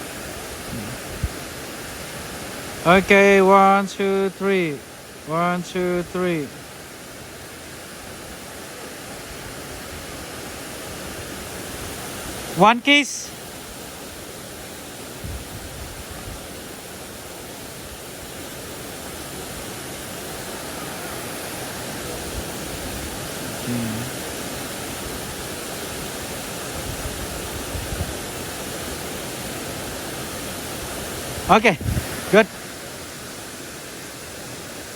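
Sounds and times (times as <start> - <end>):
waterfall pouring: 16.4 - 34.9.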